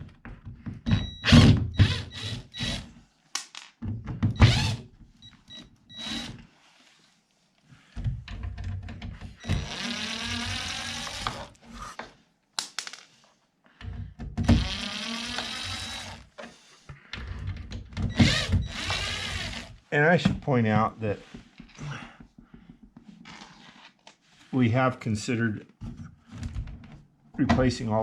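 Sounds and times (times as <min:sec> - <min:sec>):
power drill driving screws: 0:01.2 - 0:02.9, 0:04.4 - 0:04.8, 0:05.9 - 0:06.4, 0:09.4 - 0:11.6, 0:14.4 - 0:16.3, 0:18.1 - 0:19.8.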